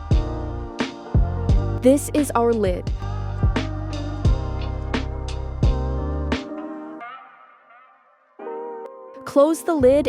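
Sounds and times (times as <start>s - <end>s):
strong bass: 0.0s - 6.4s.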